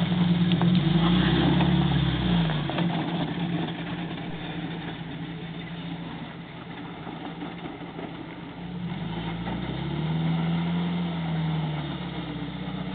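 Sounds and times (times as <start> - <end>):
car engine revving: 0.0 - 7.0, 8.5 - 12.9.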